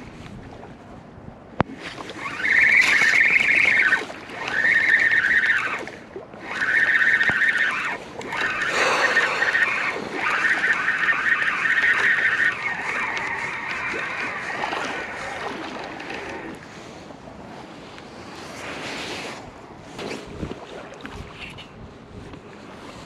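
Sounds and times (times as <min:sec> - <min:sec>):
fishing reel whirring: 0:02.1 - 0:16.6.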